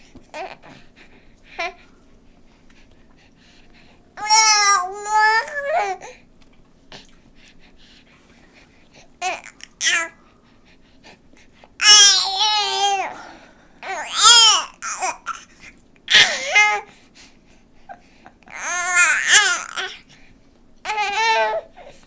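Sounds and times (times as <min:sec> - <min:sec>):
baby babbling: 0:04.2 - 0:06.2, 0:09.2 - 0:10.2, 0:11.8 - 0:15.5, 0:16.1 - 0:16.9, 0:18.5 - 0:20.0, 0:20.8 - 0:21.9.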